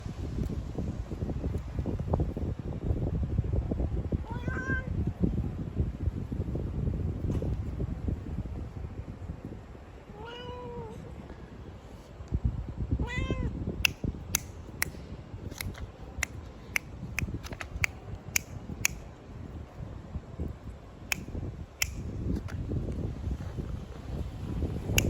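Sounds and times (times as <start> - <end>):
cat meowing: 4.3 - 4.9, 10.1 - 11.0, 13.0 - 13.6
short sharp clicks: 21.1 - 22.1.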